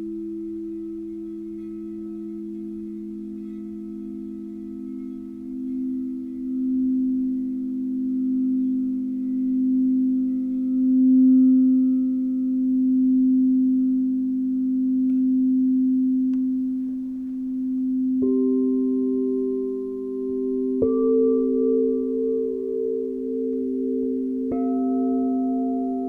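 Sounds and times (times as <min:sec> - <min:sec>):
crystal singing bowls ringing: 0:00.0 - 0:26.0.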